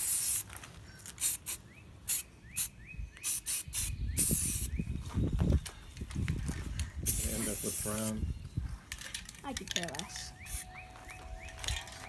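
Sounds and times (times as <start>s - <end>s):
spray paint can hissing: 0.0s - 0.5s, 1.1s - 4.7s, 7.0s - 8.2s.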